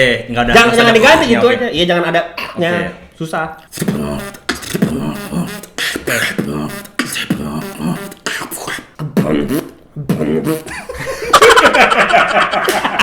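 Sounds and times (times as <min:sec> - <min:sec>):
person beatboxing: 0:03.6 - 0:11.3.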